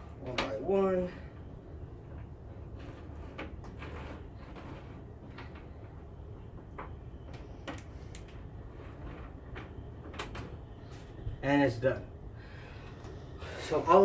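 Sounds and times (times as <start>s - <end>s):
low background hum: 0.0s - 14.0s.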